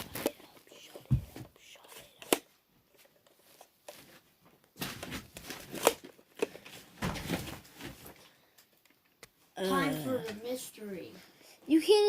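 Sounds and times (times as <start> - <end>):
toys handling rustling: 0.0 - 9.1.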